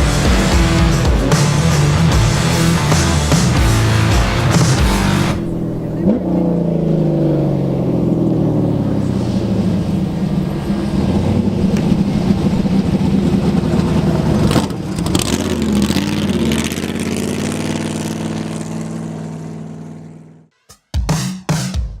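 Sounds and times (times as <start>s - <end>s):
rushing wind: 0.0s - 16.4s
dirt noise: 0.0s - 18.8s
race vehicle engine running hard: 0.0s - 20.5s.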